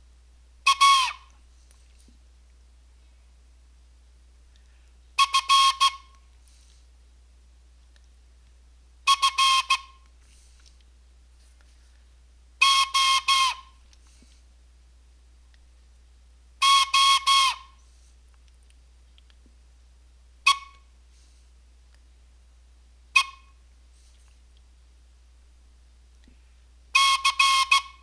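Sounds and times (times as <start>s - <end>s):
morse code whistle blasts: 0.6s - 1.2s, 5.2s - 6.1s, 9.1s - 10.0s, 12.6s - 13.7s, 16.6s - 17.7s, 26.9s - 28.0s.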